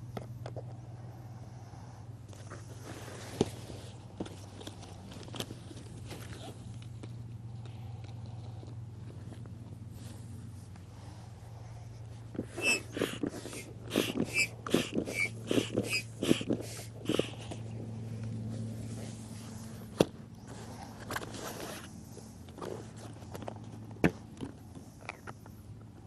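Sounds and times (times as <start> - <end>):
air pump strokes rushing: 12.4 - 17.6.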